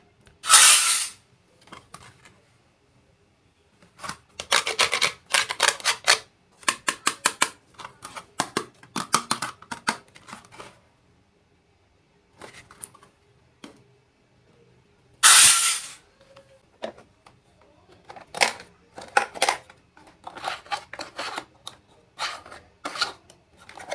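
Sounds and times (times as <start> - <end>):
toy pieces clicking and tapping: 4.4 - 7.6.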